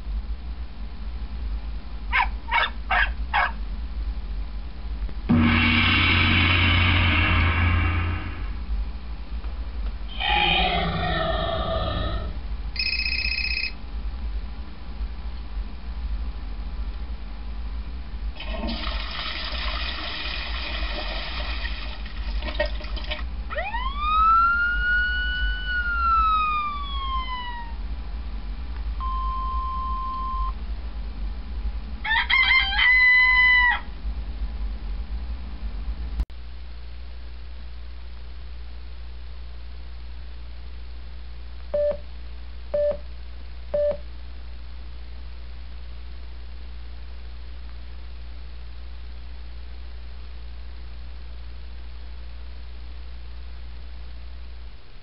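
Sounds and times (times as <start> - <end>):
steady low hum: 0.0 - 19.4, 20.5 - 32.2, 33.8 - 55.0
loud sustained sound with low hum: 3.2 - 12.8
short sound effects: 5.3 - 8.7
toilet flushing: 18.4 - 23.3
siren wail: 23.5 - 27.8.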